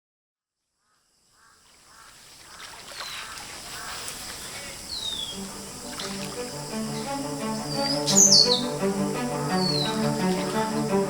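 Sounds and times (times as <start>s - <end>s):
birds chirping: 1.4s - 11.0s
low bowed-string music: 5.1s - 11.0s.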